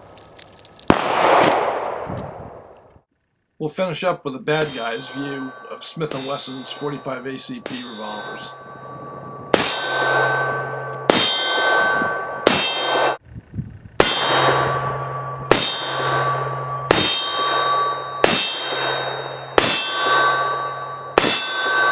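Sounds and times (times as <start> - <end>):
bullets clanging on steel target: 4.6 - 13.2, 14.0 - 21.9.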